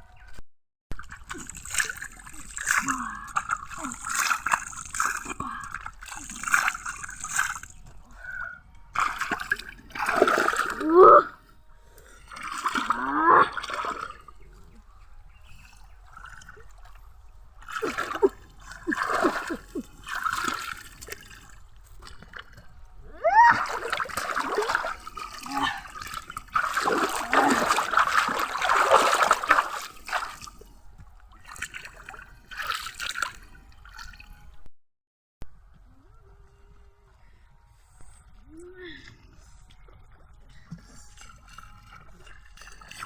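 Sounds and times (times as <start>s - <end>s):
water splashing and sloshing: 0.9s - 34.6s, 37.9s - 43.0s.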